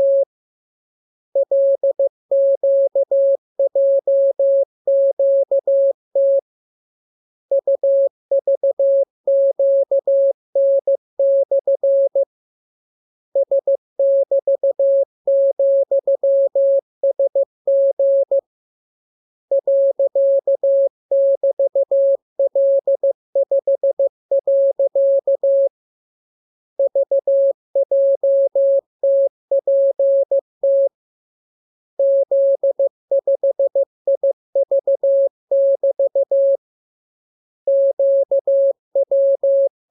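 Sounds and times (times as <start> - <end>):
morse code beeps: 0.0 - 0.3, 37.7 - 39.7.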